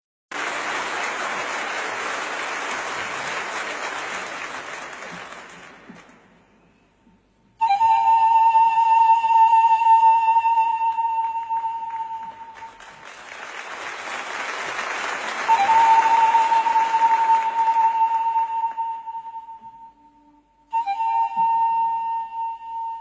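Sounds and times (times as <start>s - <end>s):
held high flute-like note: 6.4s - 12.9s, 15.3s - 23.0s.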